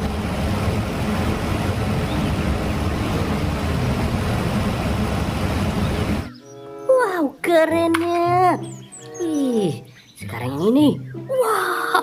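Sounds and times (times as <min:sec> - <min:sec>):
running splashing water: 0:00.0 - 0:06.3.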